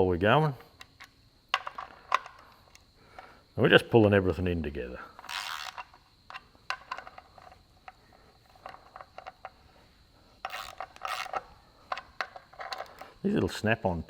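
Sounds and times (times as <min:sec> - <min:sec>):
hand ratchet clicking and rasping: 0:05.1 - 0:09.6, 0:10.4 - 0:13.2.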